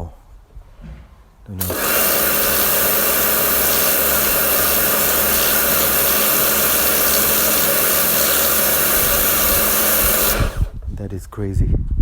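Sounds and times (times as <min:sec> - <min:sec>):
high-pressure water jet hiss: 0:01.6 - 0:10.8
pressure washer motor humming: 0:01.6 - 0:10.9.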